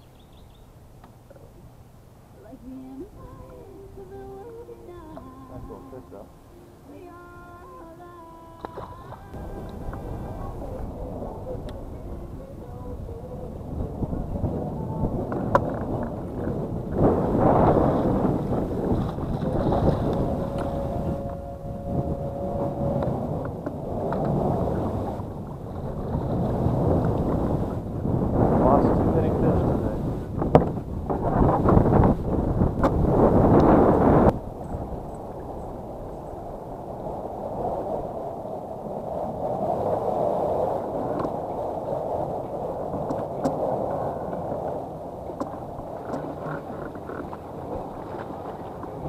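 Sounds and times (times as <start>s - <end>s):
faint steady hum: 0.0s - 46.0s
wind buffeting microphone: 0.0s - 49.0s
faint clicks: 8.5s - 10.0s
water gurgling against hull: 8.6s - 49.0s.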